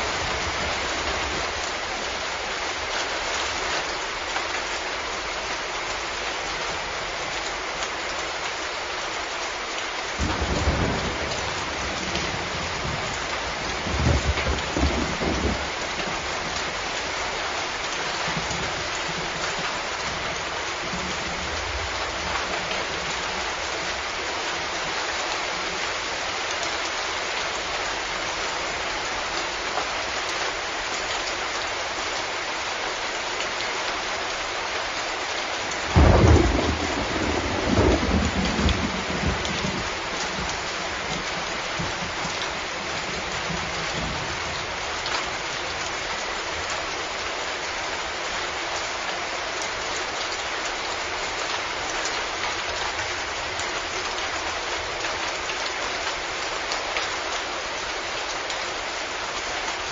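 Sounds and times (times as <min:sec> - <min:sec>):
steady rain: 0:00.0 - 0:59.9
thunder clap rumbling: 0:10.2 - 0:16.6, 0:35.9 - 0:42.2.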